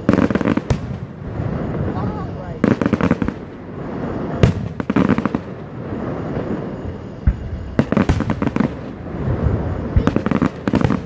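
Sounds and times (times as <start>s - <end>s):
firework bang: 0.0s - 11.0s
fireworks crackling pops: 0.0s - 11.0s.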